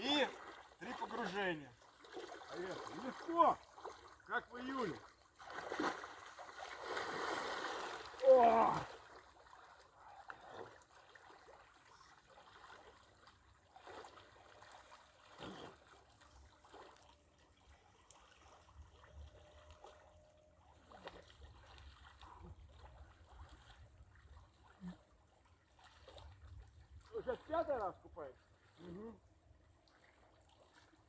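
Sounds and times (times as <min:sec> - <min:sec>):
lake water lapping: 0:00.0 - 0:31.0
soft splashes in water: 0:00.0 - 0:31.0.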